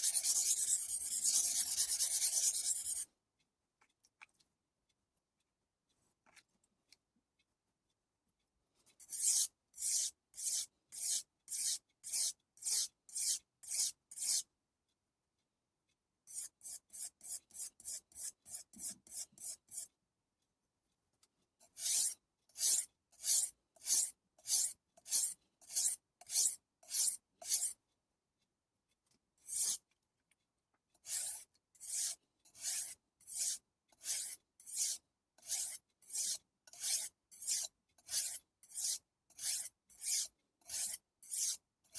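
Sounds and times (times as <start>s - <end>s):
knife blade scraping on whetstone: 0.0s - 3.0s, 9.1s - 14.4s, 21.8s - 27.7s, 31.1s - 41.6s.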